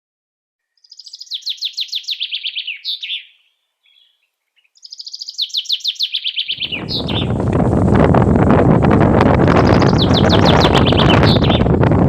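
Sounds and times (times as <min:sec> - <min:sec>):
songbird high trill: 0:00.6 - 0:07.4, 0:09.5 - 0:11.7.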